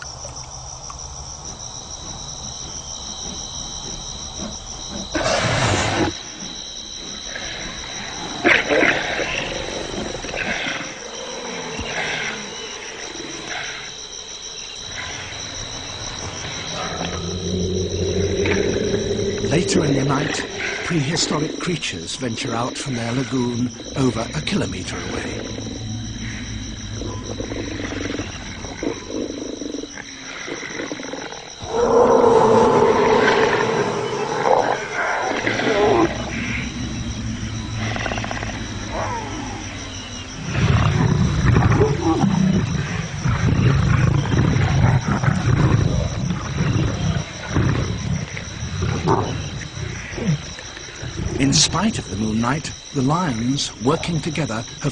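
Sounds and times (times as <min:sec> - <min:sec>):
insects trilling: 0:00.0 - 0:54.9
large animal rumbling: 0:14.8 - 0:53.3.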